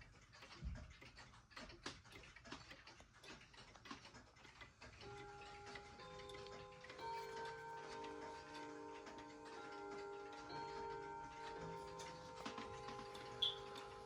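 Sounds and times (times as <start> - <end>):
clock ticking: 0.0 - 14.0
clock chime notes: 5.2 - 14.0.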